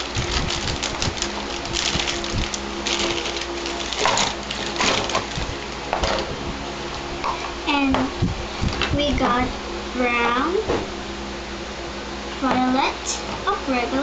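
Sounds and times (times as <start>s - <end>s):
plastic packaging crinkling: 0.0s - 5.9s
faint steady hum: 0.0s - 14.0s.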